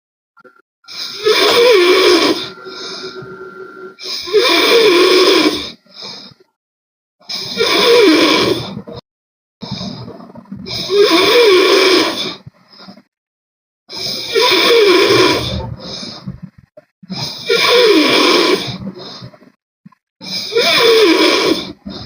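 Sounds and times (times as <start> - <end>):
person snoring loudly: 0.9 - 5.8, 7.3 - 8.8, 10.7 - 12.4, 13.9 - 15.7, 17.1 - 18.8, 20.2 - 21.8.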